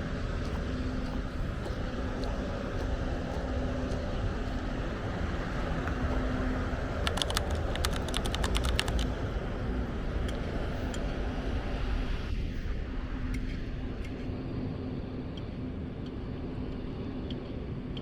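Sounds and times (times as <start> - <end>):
faint engine hum: 0.0 - 18.0
traffic rumble: 0.0 - 18.0
rapid sharp clicks: 6.9 - 9.2.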